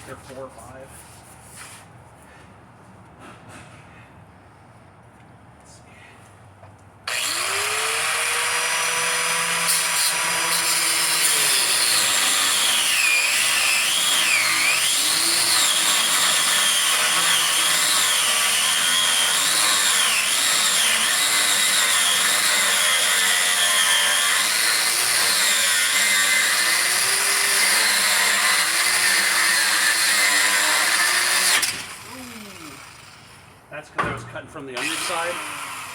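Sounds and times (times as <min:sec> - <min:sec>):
abrasive cutoff wheel cutting steel: 0:07.1 - 0:33.5, 0:34.8 - 0:35.9.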